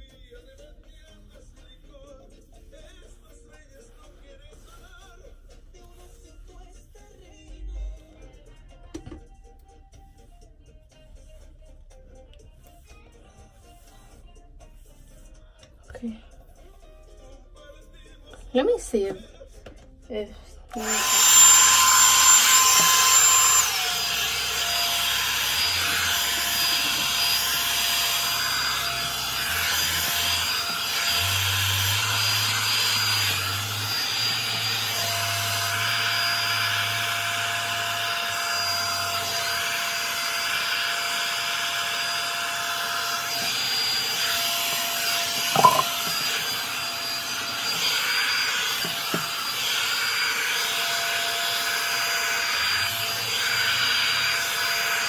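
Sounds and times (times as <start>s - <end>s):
hot-air brush motor whine: 20.7s - 55.0s.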